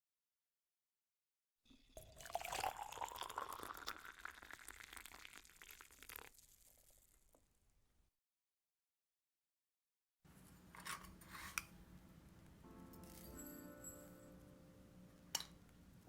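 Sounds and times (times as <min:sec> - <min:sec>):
faint liquid trickle: 0:01.7 - 0:07.4
liquid pouring into a glass: 0:01.7 - 0:07.4.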